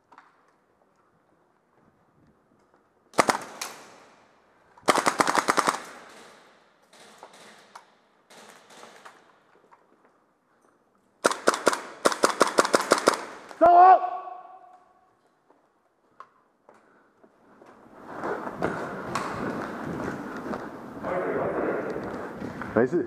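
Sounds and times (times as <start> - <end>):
airsoft rifles firing bursts: 3.2 - 4.0, 4.8 - 7.7, 11.2 - 13.5.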